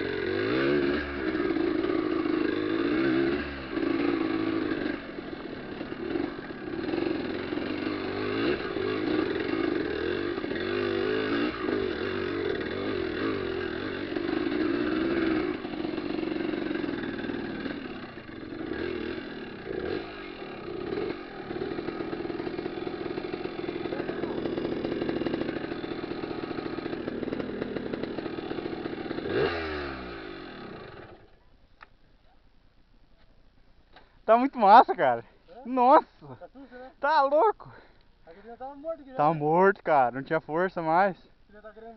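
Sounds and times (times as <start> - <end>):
motorcycle engine revving: 0.0 - 31.4.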